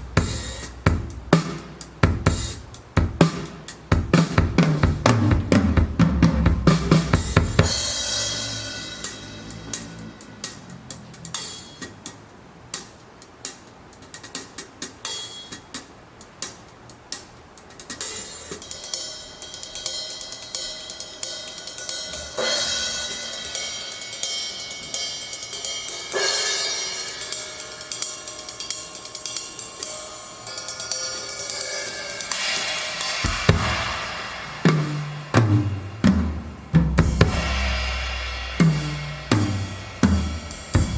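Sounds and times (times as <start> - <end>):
hi-hat ticks: 0.0 - 5.6, 6.8 - 35.1
heavy drum hits: 0.0 - 10.2, 32.3 - 40.9
cymbals shimmering: 0.0 - 12.0, 18.0 - 40.9.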